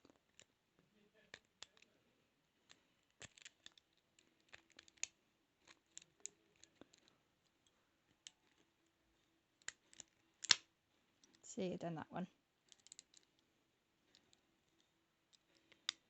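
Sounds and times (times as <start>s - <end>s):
lock pick scratching and clicking: 2.7s - 7.1s, 9.6s - 10.6s, 12.6s - 13.4s.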